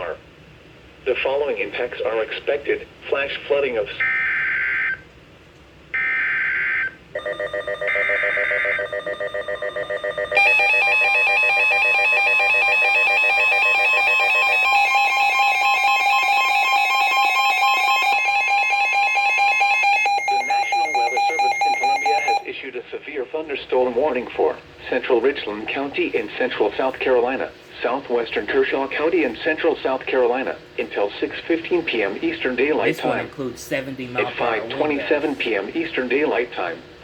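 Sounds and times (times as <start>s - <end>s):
steady warning alarm tone: 4.0s - 5.0s, 6.0s - 22.5s
pulsing alarm beeps: 6.0s - 22.4s
data bursts: 7.2s - 22.4s.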